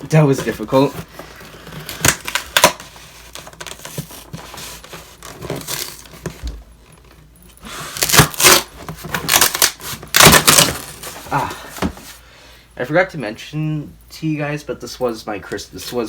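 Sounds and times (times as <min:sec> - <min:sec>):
cardboard scraping and rustling: 0:00.1 - 0:07.2, 0:07.8 - 0:12.2.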